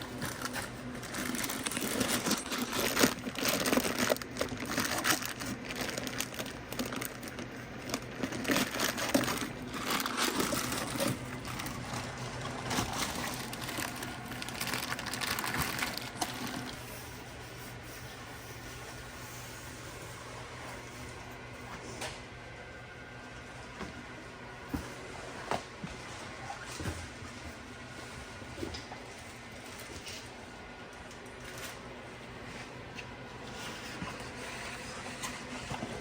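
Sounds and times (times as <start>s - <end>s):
crinkling and rustling: 0.0s - 17.0s.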